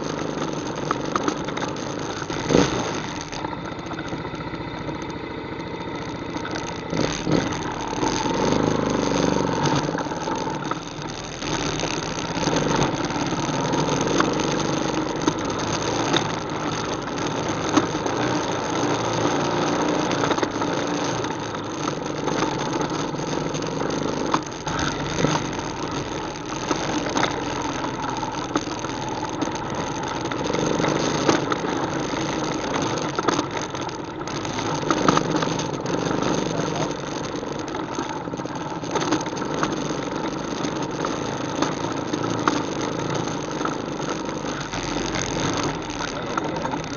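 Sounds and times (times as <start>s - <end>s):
atv engine revving: 0.0s - 46.9s.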